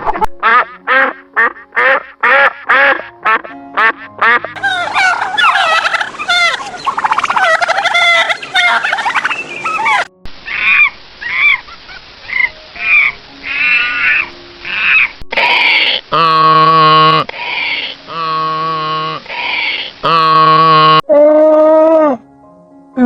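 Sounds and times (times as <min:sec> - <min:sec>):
animal calls: 0:04.5 - 0:22.2.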